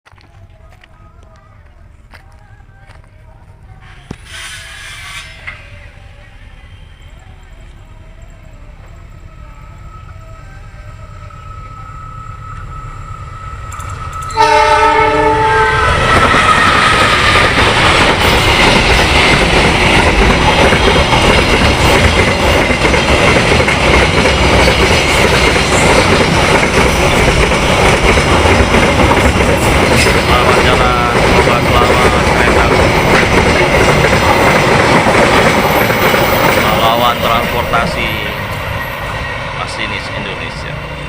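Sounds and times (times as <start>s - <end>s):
train rumbling past: 0.1s - 41.0s
locomotive horn blast: 14.3s - 16.6s.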